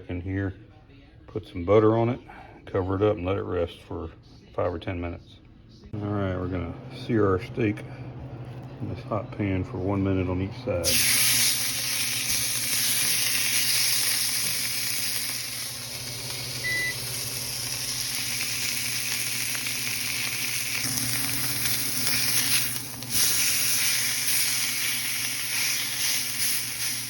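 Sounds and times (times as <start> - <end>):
steak sizzling in a skillet: 10.8 - 27.0.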